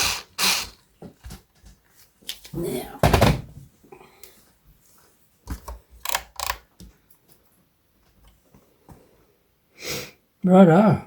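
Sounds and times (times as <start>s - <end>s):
screwdriver and metal hardware clicks: 6.0s - 6.6s.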